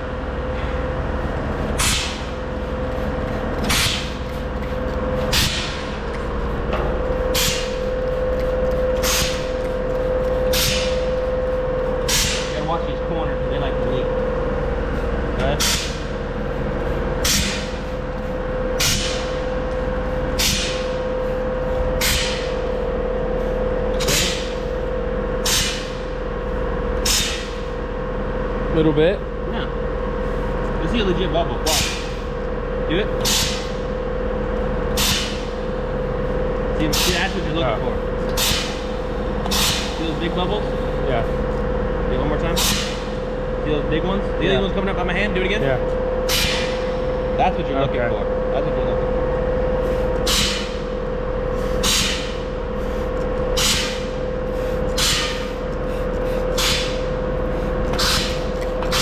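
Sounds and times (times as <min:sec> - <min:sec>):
steady low hum: 0:00.0 - 0:59.0
spray bottle squirting: 0:07.2 - 0:11.6.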